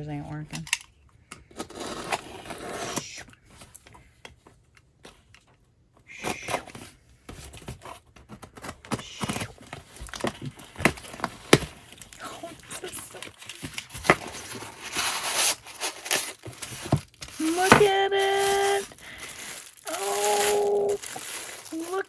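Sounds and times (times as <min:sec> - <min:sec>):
packaging tearing and crinkling: 0:08.4 - 0:22.0.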